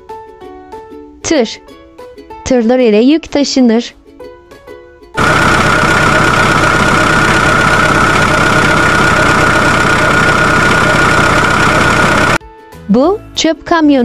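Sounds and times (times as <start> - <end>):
high whine: 5.2 - 12.4
truck engine rumble: 5.2 - 12.4.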